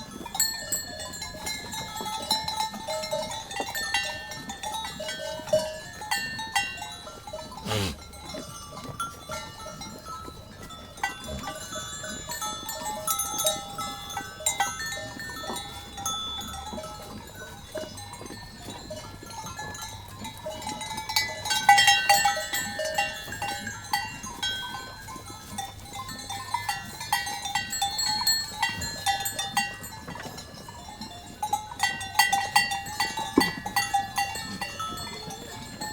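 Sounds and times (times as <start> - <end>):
sheep bells clanking: 0.0 - 35.9
sheep bleating: 7.6 - 8.0.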